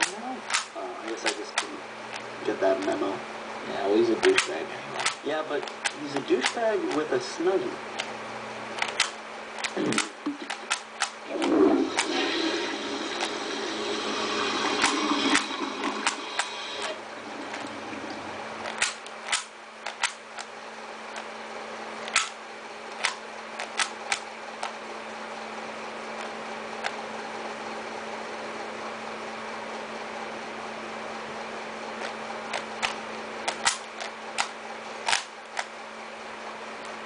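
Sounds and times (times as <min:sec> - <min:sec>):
microwave oven humming: 0:00.0 - 0:37.0
sharp clicks and pops: 0:04.2 - 0:07.0, 0:08.8 - 0:12.1, 0:18.6 - 0:20.5, 0:22.0 - 0:24.8, 0:32.0 - 0:35.7.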